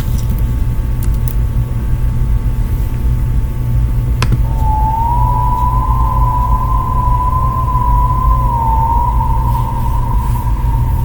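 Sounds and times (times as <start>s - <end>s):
low rumble: 4.3s - 11.0s
emergency alert siren tone: 4.4s - 11.0s.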